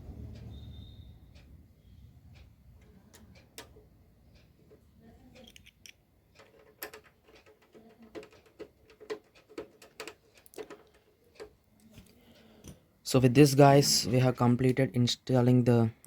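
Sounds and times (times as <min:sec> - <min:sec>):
small hard parts clicking: 0:02.3 - 0:12.8.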